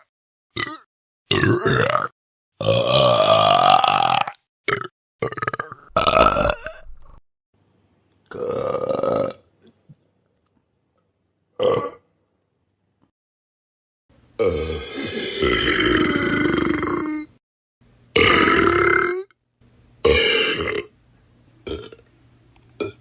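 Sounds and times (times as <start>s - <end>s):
person burping: 0.0s - 7.2s, 8.3s - 9.4s, 11.6s - 12.1s, 14.4s - 17.4s, 18.1s - 19.4s, 20.0s - 20.9s, 21.7s - 22.0s, 22.8s - 23.0s.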